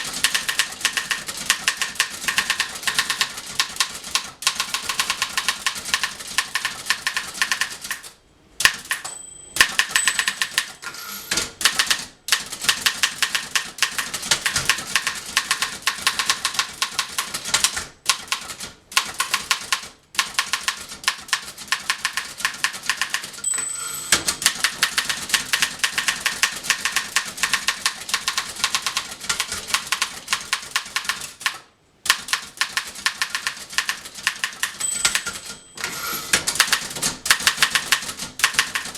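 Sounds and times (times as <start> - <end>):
typewriter keys striking: 0.0 - 10.8, 11.4 - 23.5, 24.1 - 38.9
typewriter bell ding: 8.9 - 10.8, 23.4 - 25.0, 34.6 - 36.3.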